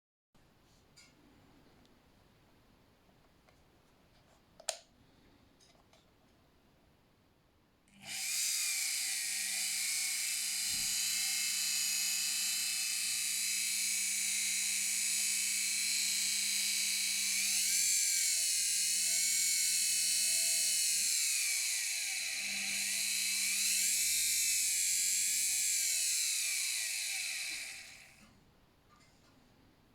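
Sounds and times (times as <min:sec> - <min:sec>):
electric motor whining: 0:08.0 - 0:28.2.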